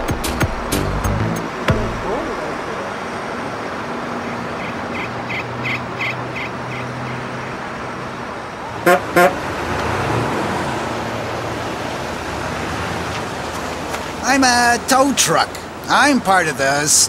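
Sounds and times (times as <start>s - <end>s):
engine rumble: 0.0s - 17.0s
vehicle horn toots: 8.8s - 9.4s.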